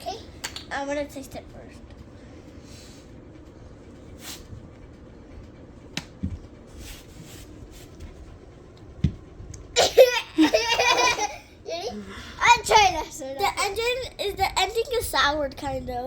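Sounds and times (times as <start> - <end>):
child's voice: 0.0 - 1.8, 11.6 - 16.0.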